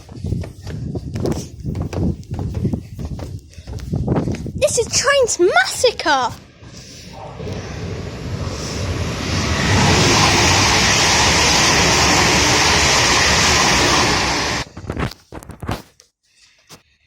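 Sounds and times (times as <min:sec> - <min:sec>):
train rushing past: 0:06.4 - 0:14.7.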